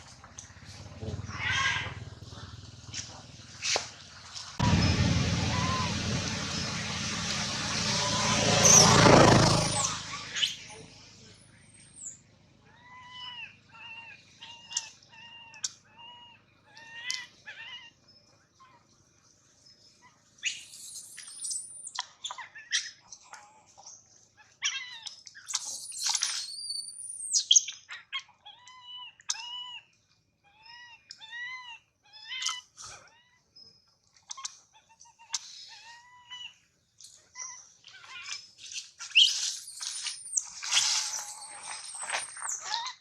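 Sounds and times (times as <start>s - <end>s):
baby monkey screaming: 1.1s - 2.0s, 4.7s - 6.2s, 12.7s - 18.0s, 24.4s - 33.5s, 34.3s - 36.7s, 37.3s - 43.0s.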